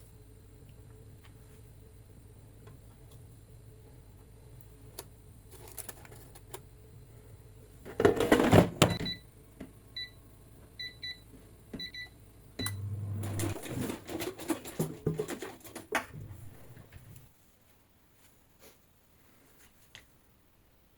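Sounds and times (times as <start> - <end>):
air fryer basket clattering: 13.2 - 16.2.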